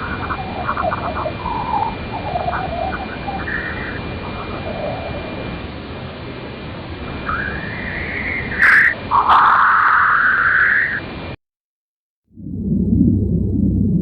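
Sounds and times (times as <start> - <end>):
rising whistle-like tones: 7.2 - 11.1.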